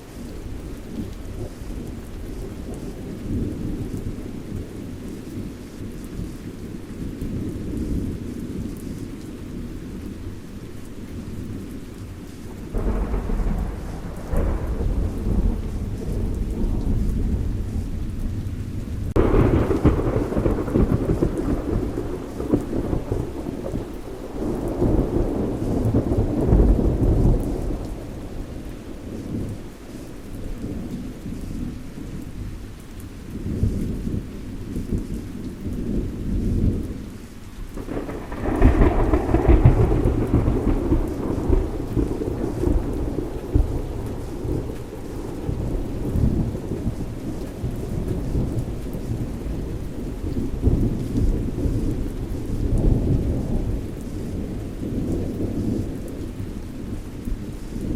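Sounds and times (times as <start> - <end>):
rain falling: 0.0 - 57.9
rolling thunder: 11.2 - 31.0, 33.4 - 57.9.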